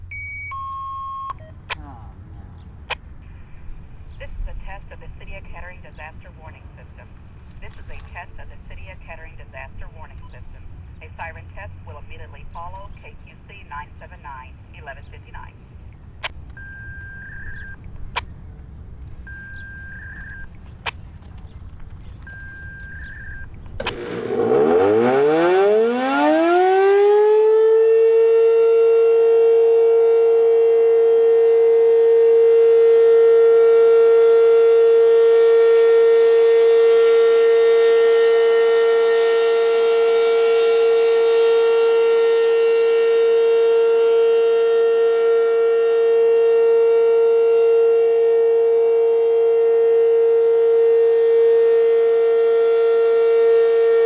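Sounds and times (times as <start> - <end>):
warning siren rising to steady tone: 0.0 - 3.4, 16.6 - 18.3, 19.0 - 20.8, 22.1 - 54.0.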